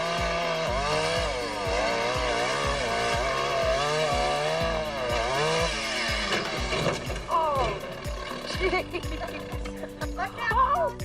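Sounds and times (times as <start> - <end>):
chainsaw engine revving: 0.0 - 10.4
music with thumping beat: 0.0 - 11.0.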